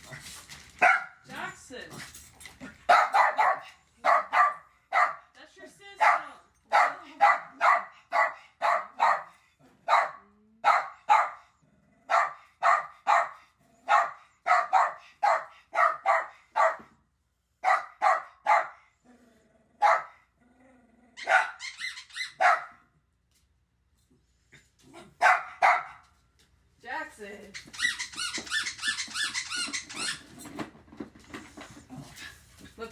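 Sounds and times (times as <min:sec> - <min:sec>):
dog barking: 0:00.8 - 0:01.2, 0:02.9 - 0:05.3, 0:06.0 - 0:11.5, 0:12.1 - 0:17.0, 0:17.6 - 0:18.9, 0:19.8 - 0:20.2, 0:21.2 - 0:21.6, 0:22.2 - 0:22.9, 0:25.0 - 0:26.0
dog growling: 0:19.0 - 0:21.2.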